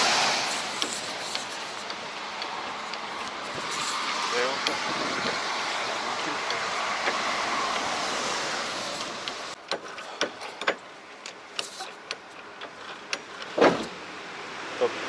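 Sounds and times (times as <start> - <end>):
light clicks and knocks: 9.0 - 13.9.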